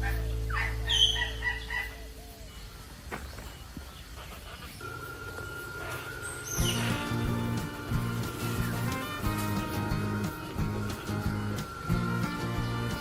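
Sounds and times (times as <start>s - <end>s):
bird calling: 0.0s - 13.0s
background music: 6.6s - 13.0s.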